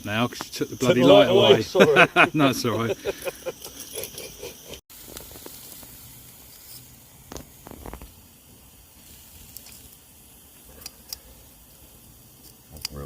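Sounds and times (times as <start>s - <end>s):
meat sizzling on grill: 0.0s - 13.0s.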